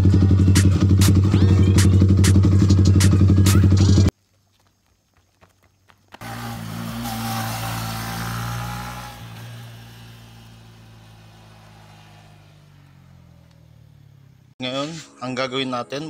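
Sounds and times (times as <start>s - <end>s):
vehicle engine running: 0.0s - 4.1s, 6.1s - 14.6s
faint clicks: 12.8s - 13.6s.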